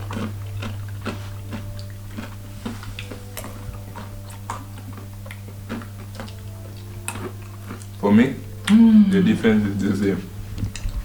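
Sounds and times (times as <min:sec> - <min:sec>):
nuts crunching while chewed: 0:00.0 - 0:08.8
low electrical hum: 0:00.0 - 0:11.0.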